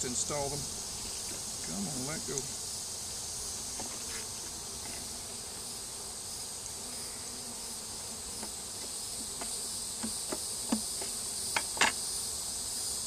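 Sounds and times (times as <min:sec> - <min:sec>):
bees humming: 0:00.0 - 0:13.0
insect chirring: 0:00.0 - 0:13.0
wooden hive frames knocking: 0:08.3 - 0:12.0.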